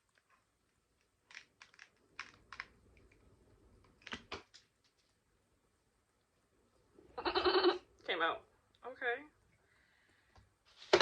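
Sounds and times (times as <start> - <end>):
faint clicks and crackles: 0.0 - 5.3.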